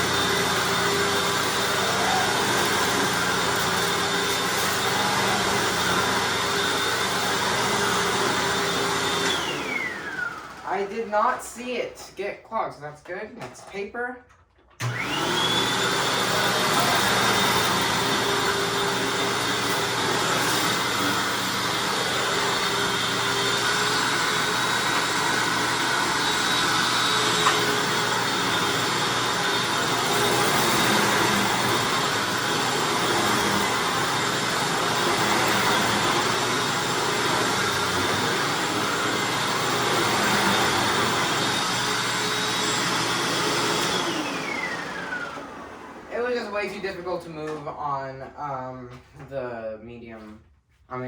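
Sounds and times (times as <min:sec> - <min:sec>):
vacuum cleaner running: 0:00.0 - 0:11.8, 0:14.8 - 0:47.6.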